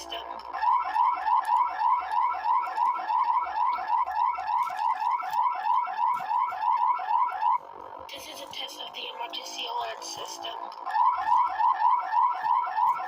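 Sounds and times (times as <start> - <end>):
rising electronic alarm chirps: 0.5 - 8.0, 10.8 - 13.0.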